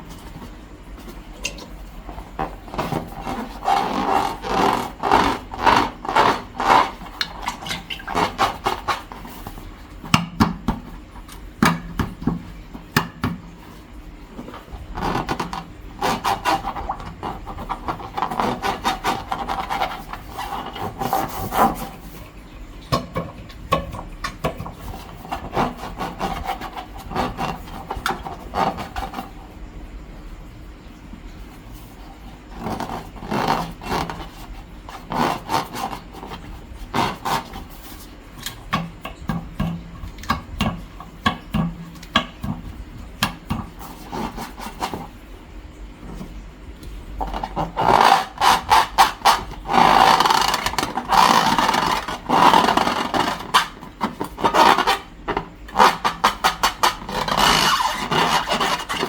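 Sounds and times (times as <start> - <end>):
slime and balloons squelching: 0.0 - 10.2, 46.0 - 59.0.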